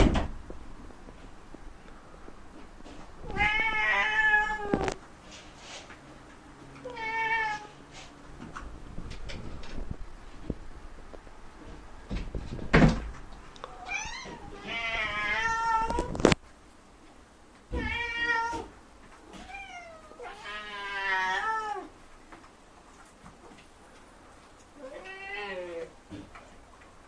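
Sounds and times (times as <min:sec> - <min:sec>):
cat meowing: 0:03.2 - 0:05.0, 0:06.9 - 0:07.7, 0:13.6 - 0:16.2, 0:17.7 - 0:18.7, 0:19.3 - 0:21.9, 0:24.8 - 0:25.9.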